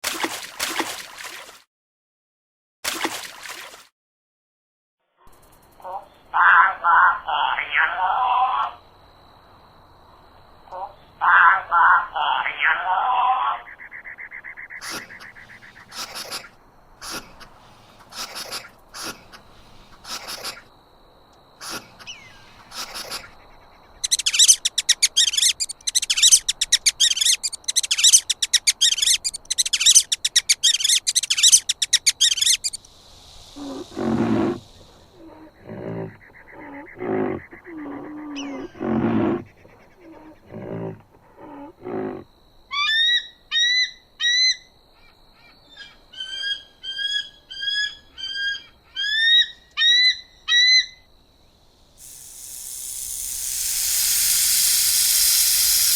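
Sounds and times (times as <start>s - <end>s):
high-pitched animal chattering: 14.8s - 20.6s, 21.6s - 40.5s, 52.0s - 55.9s
short rising chirps: 24.0s - 35.1s, 52.0s - 55.9s
low animal grunting calls: 33.5s - 42.3s.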